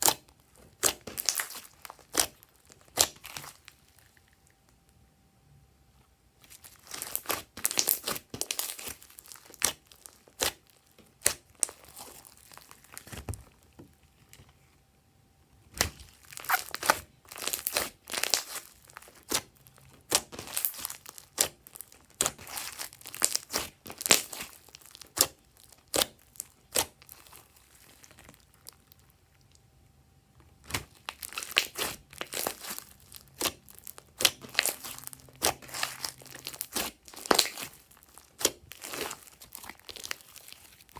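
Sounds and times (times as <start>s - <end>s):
slime squeezed by hand: 15.8s - 19.5s.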